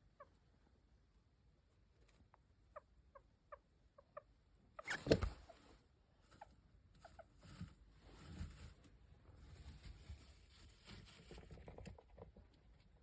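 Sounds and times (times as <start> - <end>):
hamster squeaky peeps: 0.0 - 0.4, 2.6 - 5.7, 6.3 - 7.6.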